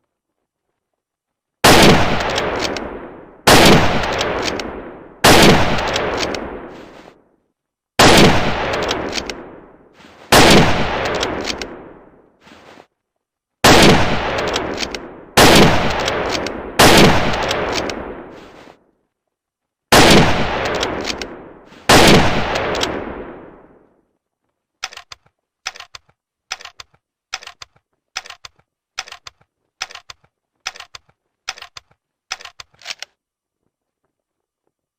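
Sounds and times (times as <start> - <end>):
rifle shots echoing: 1.6 - 7.1, 8.0 - 12.2, 13.6 - 18.7, 19.9 - 23.8.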